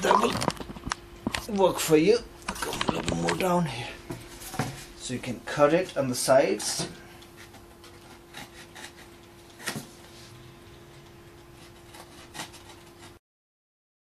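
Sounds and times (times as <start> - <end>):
steady low hum: 0.0 - 13.2
foam scraping and rubbing: 11.5 - 13.2.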